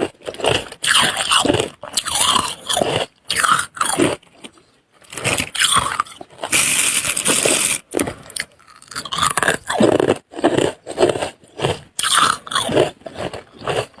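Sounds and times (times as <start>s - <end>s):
scraping frost: 5.1s - 7.8s.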